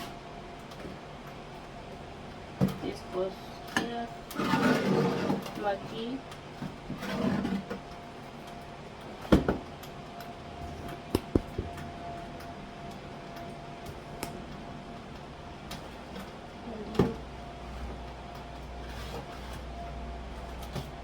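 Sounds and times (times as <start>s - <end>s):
containers knocking in cupboard: 11.1s - 11.8s.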